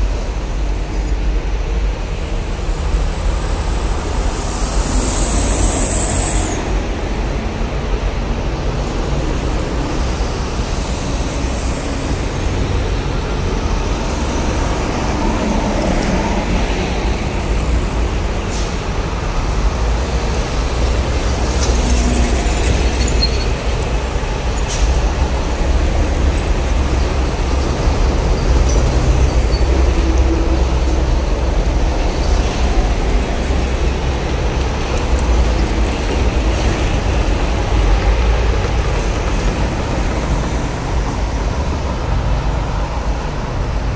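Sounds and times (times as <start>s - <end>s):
heavy highway traffic roar: 0.0s - 43.9s
thin high whine: 2.3s - 6.9s.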